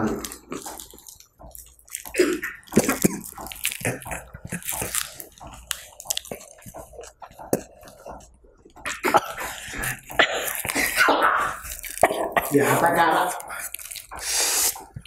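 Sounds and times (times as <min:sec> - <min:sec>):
breathy mouth noises: 0:00.0 - 0:15.0
person chewing: 0:00.0 - 0:15.0.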